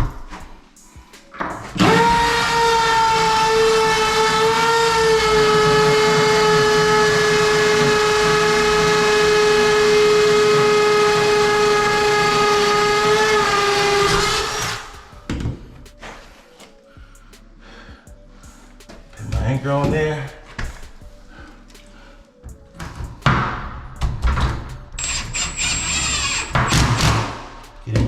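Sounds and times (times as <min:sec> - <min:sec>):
power drill whining: 0:01.7 - 0:15.2, 0:25.0 - 0:27.6.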